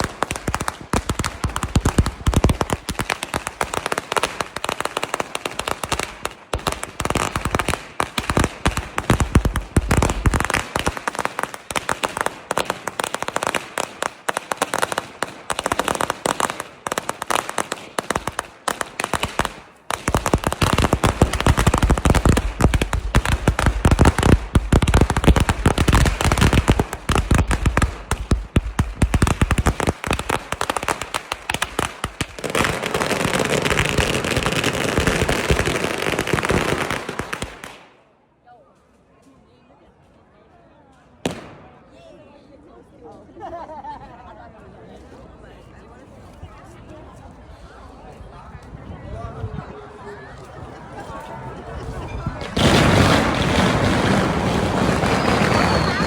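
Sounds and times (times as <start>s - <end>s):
firecrackers popping: 0.0s - 38.0s, 41.2s - 41.8s, 52.4s - 56.0s.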